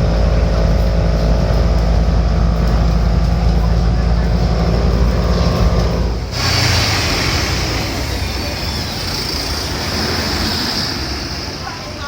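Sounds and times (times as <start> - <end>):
bus hiss and running noise: 0.0 - 12.0
diesel engine drone: 0.0 - 12.0.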